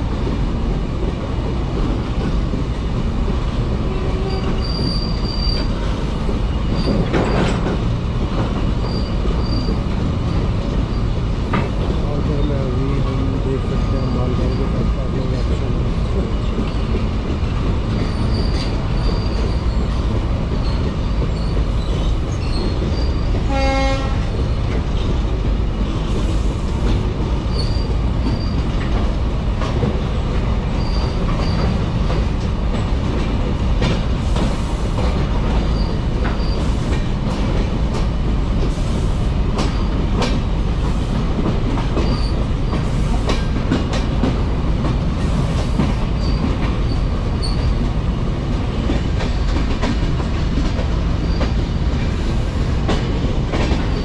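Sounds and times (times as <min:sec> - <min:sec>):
train wheels rumbling on rails: 0:00.0 - 0:54.0
train horn blast: 0:23.4 - 0:24.3.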